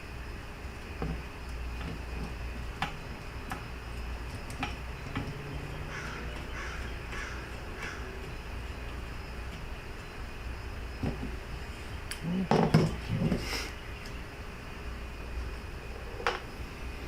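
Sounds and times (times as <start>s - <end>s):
crow cawing: 5.8s - 8.2s.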